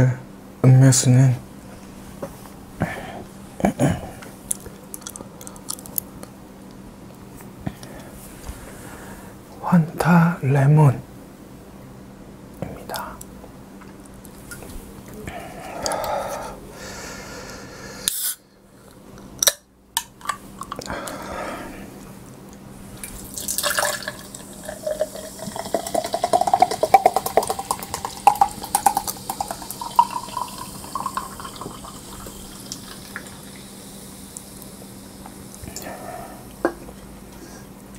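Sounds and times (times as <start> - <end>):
short hiss: 18.0 - 18.4
soda pouring into a glass: 23.1 - 34.2.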